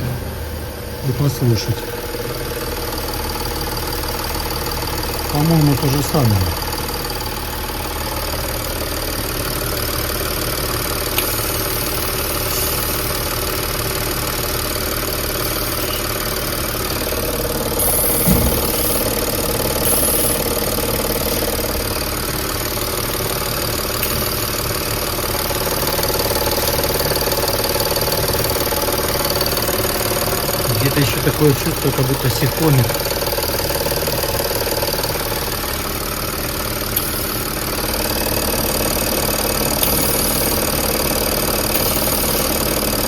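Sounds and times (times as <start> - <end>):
diesel engine idling: 0.0 - 43.0
fuel pump pulsing: 0.0 - 43.0.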